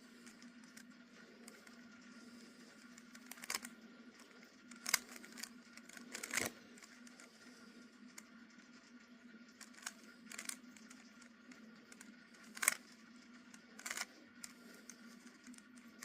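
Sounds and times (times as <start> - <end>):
faint steady hum: 0.0 - 16.0
plastic cube clacking: 2.8 - 7.3, 9.6 - 16.0.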